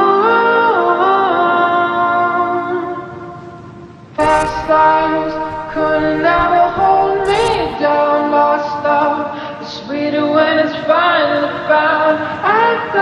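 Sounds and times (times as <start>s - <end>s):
song with singing voice: 4.2s - 7.8s.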